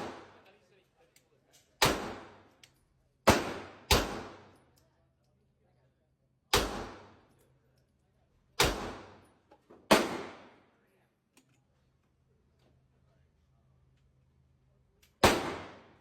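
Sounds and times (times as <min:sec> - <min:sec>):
gunshots with ringing echo: 0:00.0 - 0:00.4, 0:01.8 - 0:02.4, 0:03.2 - 0:04.6, 0:06.5 - 0:07.2, 0:08.6 - 0:09.3, 0:09.9 - 0:10.6, 0:15.2 - 0:16.0.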